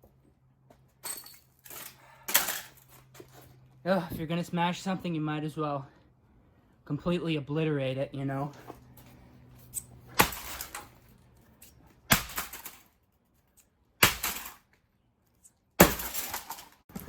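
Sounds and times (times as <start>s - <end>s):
breaking plastic and metal clatter: 1.0s - 3.0s, 10.2s - 11.0s, 12.1s - 13.0s, 14.0s - 14.7s, 15.8s - 17.0s
heavy blows smashing computer: 12.1s - 12.8s.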